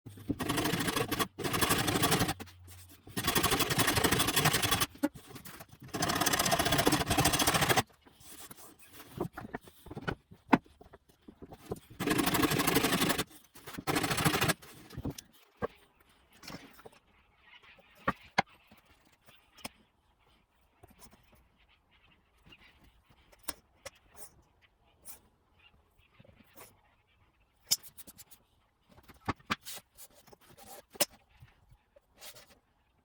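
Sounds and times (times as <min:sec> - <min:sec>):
hand saw cutting wood: 0:00.4 - 0:02.4, 0:03.2 - 0:05.0, 0:05.9 - 0:07.8, 0:12.0 - 0:14.6.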